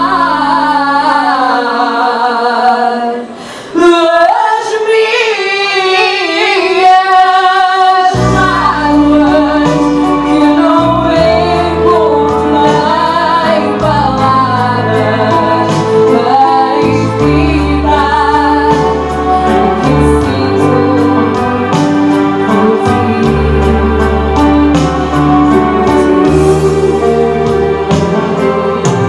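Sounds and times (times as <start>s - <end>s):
vocal duet singing: 0.0s - 28.6s
instrumental backing with light beat: 8.0s - 29.0s.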